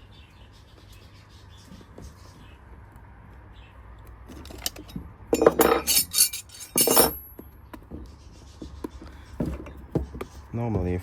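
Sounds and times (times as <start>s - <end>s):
metal tools clattering: 4.3s - 7.3s
short metallic ring: 4.4s - 7.3s.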